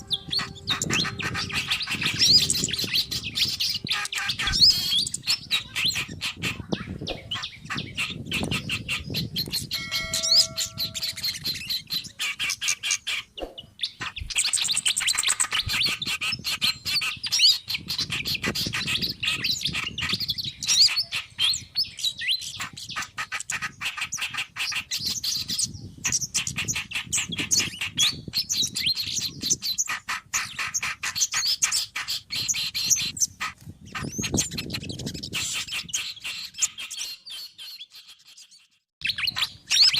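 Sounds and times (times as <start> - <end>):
steady whistled tones: 0.0 - 5.3, 9.6 - 12.0
songbirds chattering: 0.0 - 39.9.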